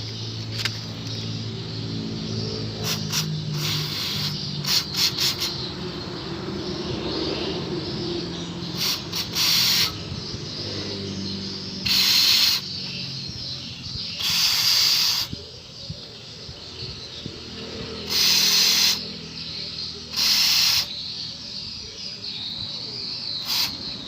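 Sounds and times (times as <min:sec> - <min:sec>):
aerosol spray hissing: 0:02.8 - 0:05.7, 0:08.8 - 0:10.0, 0:11.8 - 0:12.8, 0:14.2 - 0:15.3, 0:18.1 - 0:19.1, 0:20.1 - 0:21.0, 0:23.4 - 0:24.0.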